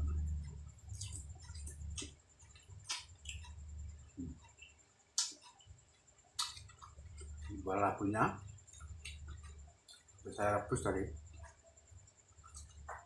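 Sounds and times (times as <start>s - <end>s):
wet chewing: 0.3s - 4.0s, 6.4s - 7.6s, 8.6s - 10.1s, 12.3s - 12.9s.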